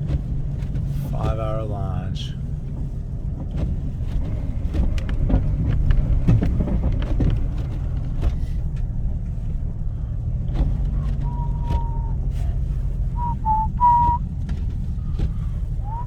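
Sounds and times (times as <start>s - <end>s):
vehicle engine and road rumble: 0.0s - 16.0s.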